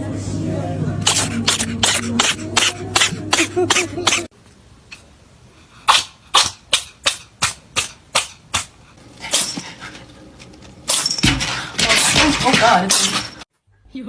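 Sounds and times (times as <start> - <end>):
cat sneezing: 5.8 - 10.0.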